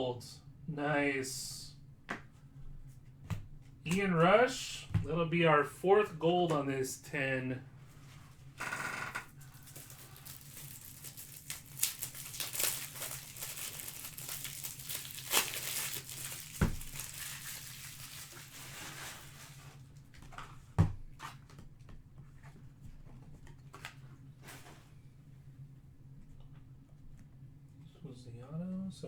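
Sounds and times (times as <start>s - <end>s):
wrappers crinkling and tearing: 8.7s - 20.0s.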